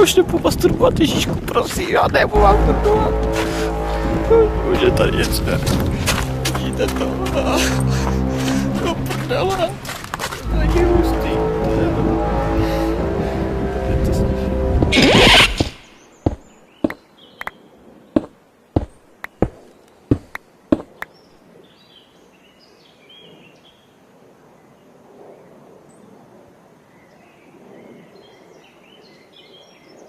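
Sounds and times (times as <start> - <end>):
birds chirping: 0.0 - 24.0
sharp knocks: 14.8 - 17.0, 18.2 - 21.1.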